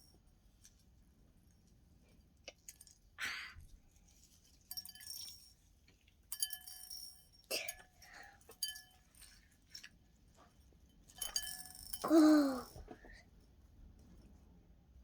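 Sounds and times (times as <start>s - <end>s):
small hard objects clinking: 4.7s - 5.5s, 11.2s - 12.8s.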